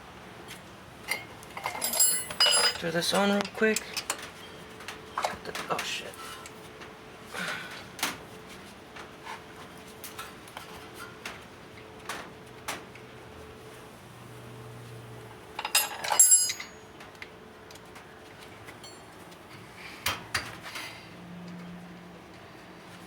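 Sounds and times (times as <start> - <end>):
ringing metallic clatter: 1.1 - 3.8, 15.6 - 16.9
metal tools clicking and tapping: 1.1 - 5.8, 15.6 - 17.8, 18.8 - 19.2.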